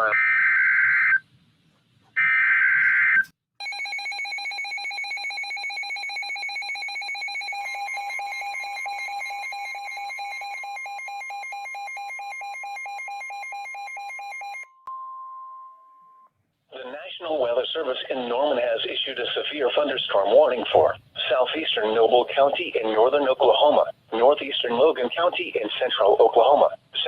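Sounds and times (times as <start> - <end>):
steady warning alarm tone: 2.2 - 14.7
pulsing electronic alarm beep: 2.2 - 16.3.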